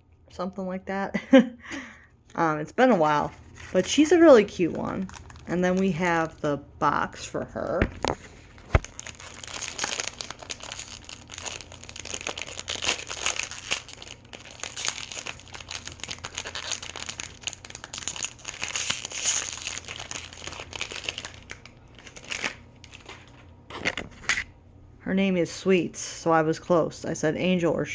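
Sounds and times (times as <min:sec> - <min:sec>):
wrapping crumpled and torn: 0:03.1 - 0:06.5, 0:08.0 - 0:23.5.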